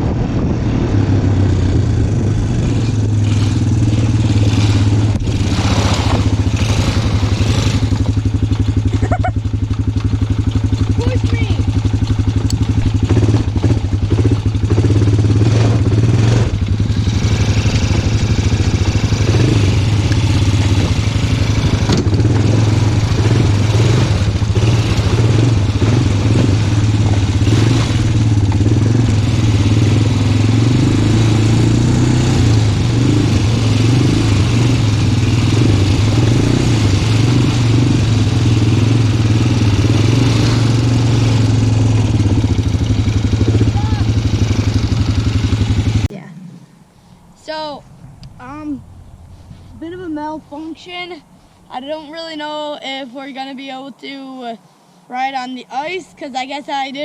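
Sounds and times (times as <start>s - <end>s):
small vehicle engine running: 0.0s - 46.1s
clattering bumps: 4.6s - 30.2s.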